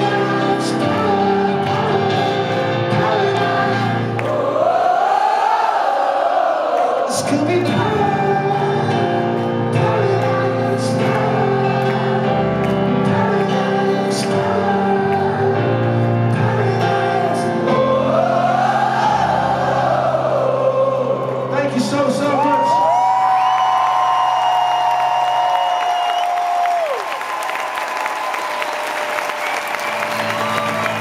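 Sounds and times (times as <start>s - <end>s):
crowd singing: 0.0s - 22.3s.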